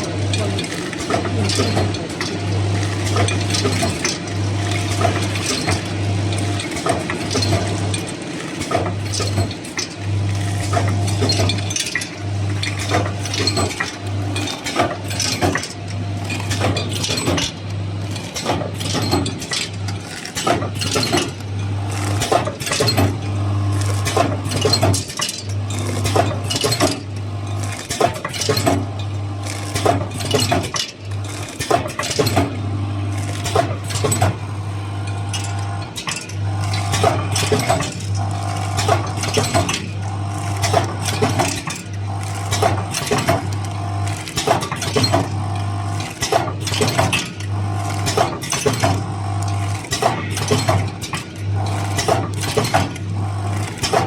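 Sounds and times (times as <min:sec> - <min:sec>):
utensils and glassware clinking: 0:00.0 - 0:23.2, 0:23.9 - 0:32.5, 0:35.0 - 0:43.6.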